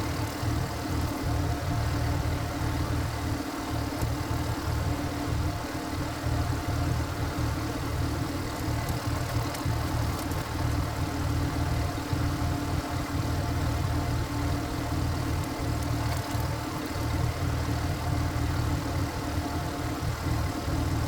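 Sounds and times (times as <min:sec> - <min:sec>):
diesel engine idling: 0:00.0 - 0:21.0.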